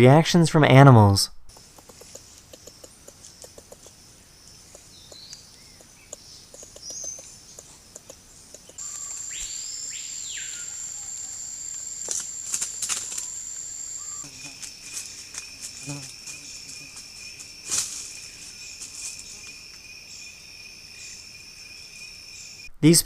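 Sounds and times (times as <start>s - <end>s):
sharp clicks: 1.5s - 3.9s, 4.6s - 9.4s
small bird chirps: 1.5s - 15.4s
high insect drone: 1.5s - 22.7s
faint ticking: 4.6s - 8.8s
sweeping bird call: 8.7s - 15.3s.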